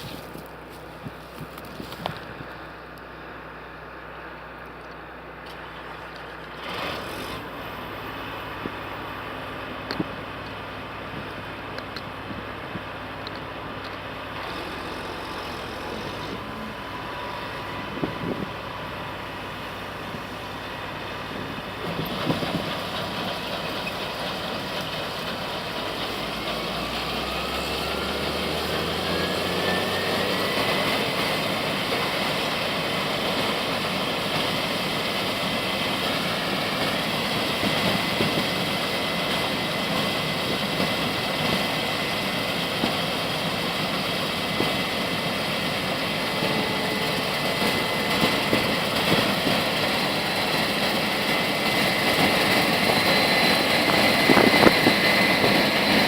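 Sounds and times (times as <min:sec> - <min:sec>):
combine harvester running: 0:00.0 - 0:56.0
rising whine: 0:14.3 - 0:24.1, 0:25.5 - 0:33.8, 0:34.7 - 0:56.0.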